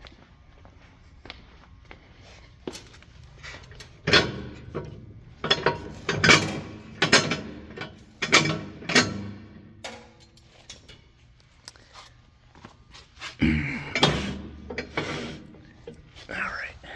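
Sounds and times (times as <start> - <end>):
sharp metal clanks and knocks: 4.0 - 10.4.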